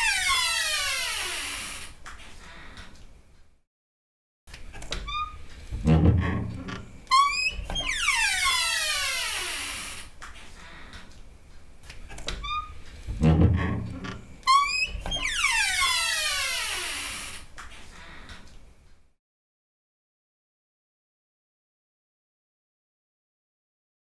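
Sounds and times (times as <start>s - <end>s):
wooden door hinges creaking: 0.0s - 1.9s, 4.7s - 10.2s, 12.1s - 17.5s
low thump: 5.8s - 6.8s, 13.1s - 14.1s.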